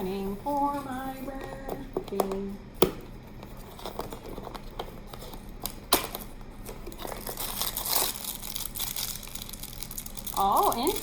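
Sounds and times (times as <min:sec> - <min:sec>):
packaging crinkling and rustling: 0:03.3 - 0:11.0.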